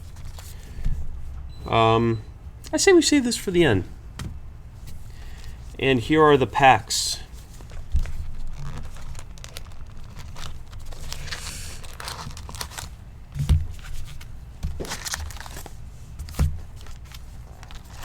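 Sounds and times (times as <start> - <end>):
foil wrappers crinkling: 7.2 - 18.0
cardboard rustling: 7.3 - 18.0.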